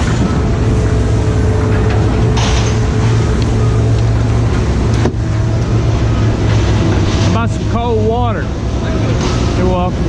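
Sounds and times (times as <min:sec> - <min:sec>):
engine droning: 0:00.0 - 0:10.0.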